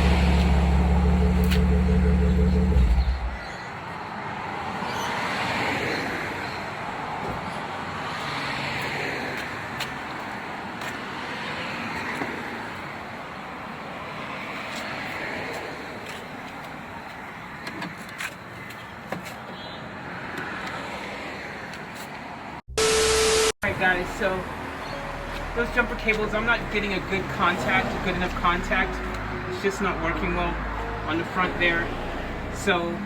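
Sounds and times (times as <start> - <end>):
car engine running: 0.0 - 3.4
road traffic passing: 0.0 - 33.0.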